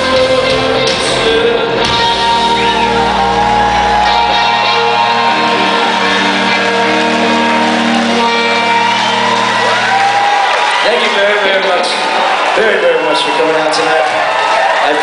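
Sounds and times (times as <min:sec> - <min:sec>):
electric guitar chord ringing: 0:00.3 - 0:10.8
crowd shouting and whooping: 0:01.6 - 0:15.0.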